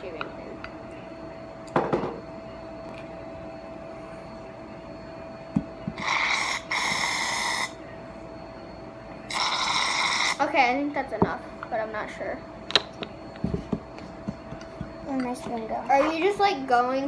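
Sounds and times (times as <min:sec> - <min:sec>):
knock on table: 0:01.8 - 0:02.2.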